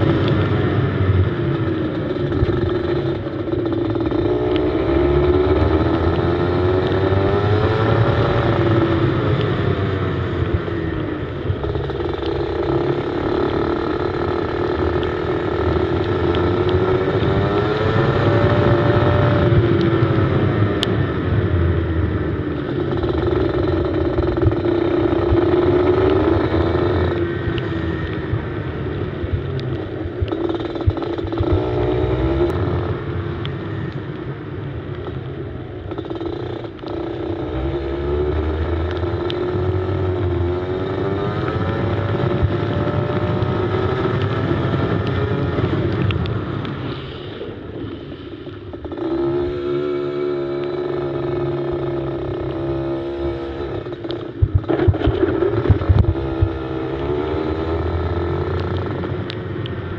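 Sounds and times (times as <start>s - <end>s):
go-kart engine revving: 0.0s - 10.3s, 11.2s - 20.5s, 21.9s - 28.2s, 30.3s - 33.0s, 35.8s - 46.6s, 48.7s - 59.7s
wind buffeting microphone: 54.4s - 57.0s.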